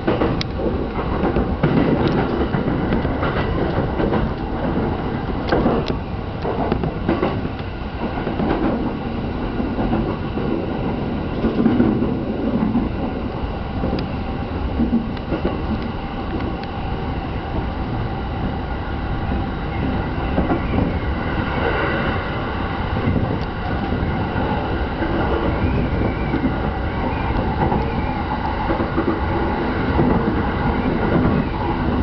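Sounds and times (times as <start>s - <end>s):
wheels clicking over rail joints: 0.0s - 9.0s, 9.6s - 14.1s, 23.0s - 32.0s
electric train rumbling: 0.0s - 32.0s.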